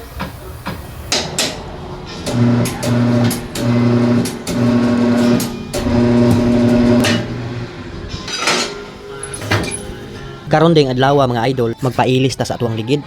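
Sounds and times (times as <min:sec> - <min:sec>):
tire changer motor humming: 0:00.0 - 0:10.6
metal clanks: 0:00.2 - 0:10.5.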